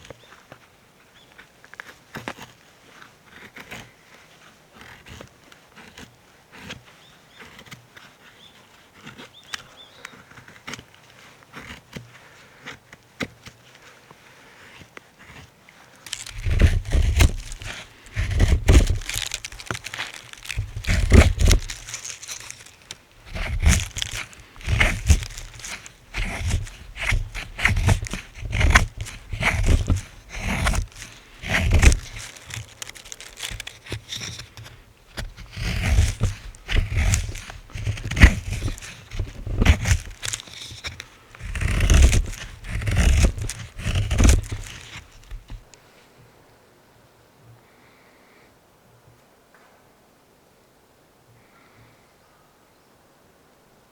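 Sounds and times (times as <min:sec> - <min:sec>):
crinkling and rustling: 0:16.0 - 0:45.8.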